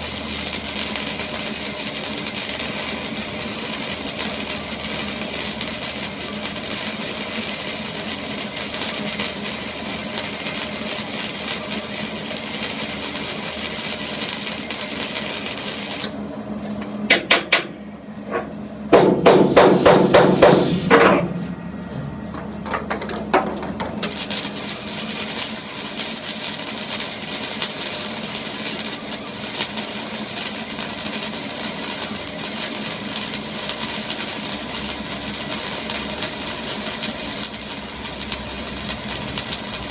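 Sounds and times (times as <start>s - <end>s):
hammer strikes: 17.1s - 17.7s, 18.9s - 21.4s
engine running: 33.2s - 39.9s.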